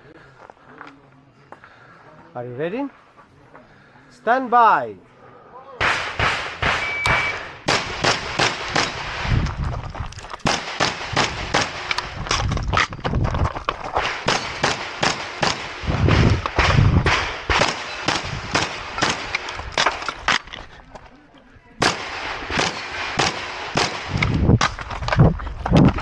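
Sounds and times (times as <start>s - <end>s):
shotgun shots: 5.8s - 9.4s, 10.4s - 12.1s, 14.0s - 20.0s, 21.8s - 24.8s.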